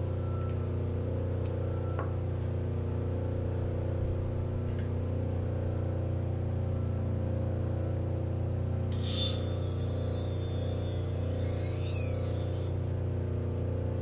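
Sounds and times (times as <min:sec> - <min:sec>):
high metallic ringing: 0:08.9 - 0:12.9
bench grinder motor humming: 0:08.9 - 0:13.0.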